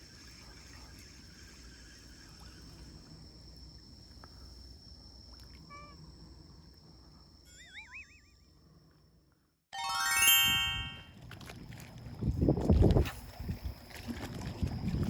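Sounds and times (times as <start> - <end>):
wind rumbling on microphone: 12.0 - 15.0.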